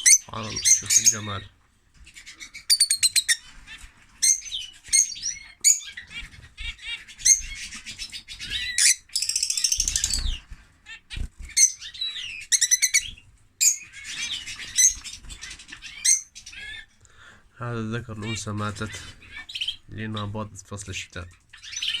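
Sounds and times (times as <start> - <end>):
bird chirping and twittering: 0.0 - 17.0, 18.0 - 22.0.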